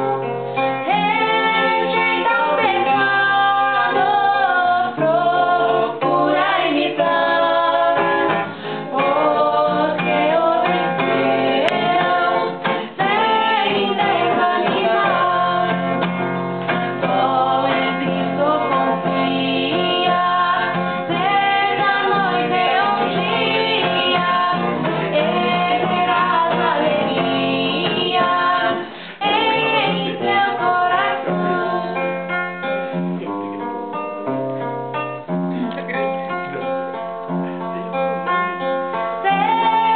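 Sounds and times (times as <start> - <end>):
plucked acoustic guitar: 0.0 - 39.9
woman singing a hymn: 0.8 - 16.1, 17.0 - 32.0, 39.2 - 39.9.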